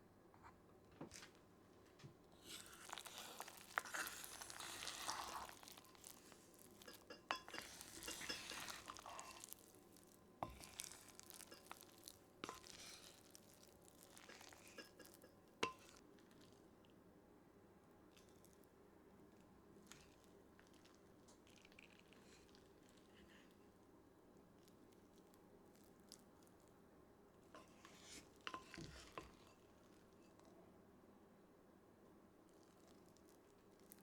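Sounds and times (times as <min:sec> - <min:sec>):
stirring in a pot: 0:02.1 - 0:16.8, 0:19.2 - 0:23.8, 0:27.4 - 0:30.6
utensils clinking: 0:06.7 - 0:09.5, 0:14.3 - 0:15.9.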